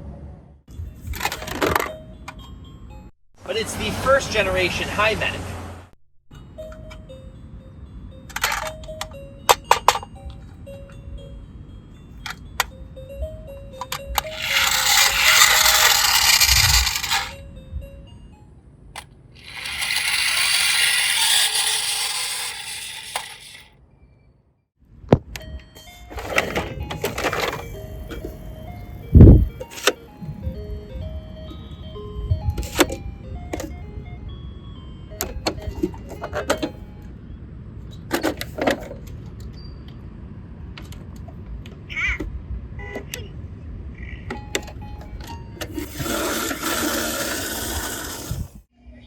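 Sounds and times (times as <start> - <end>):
toy vehicle rattling down slope: 13.8 - 17.4, 19.4 - 23.7, 45.7 - 48.6.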